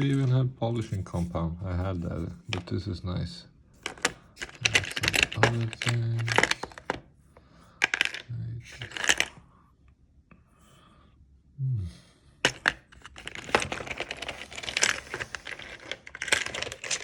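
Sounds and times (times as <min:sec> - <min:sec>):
small plastic parts clicking: 0:03.8 - 0:07.0, 0:07.8 - 0:09.4, 0:12.4 - 0:17.0
plastic packaging crinkling: 0:03.9 - 0:07.0, 0:12.6 - 0:17.0.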